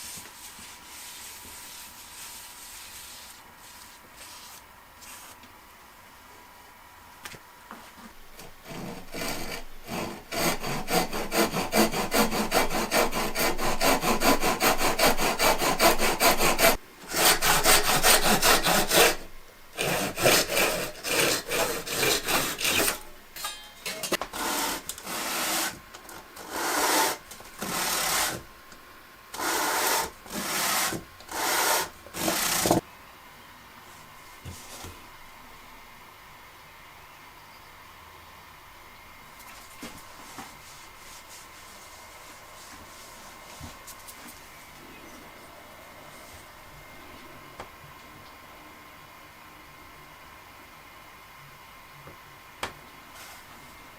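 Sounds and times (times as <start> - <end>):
hand tool stroking wood: 8.4 - 23.6, 24.3 - 25.8, 26.4 - 28.4, 29.4 - 32.8.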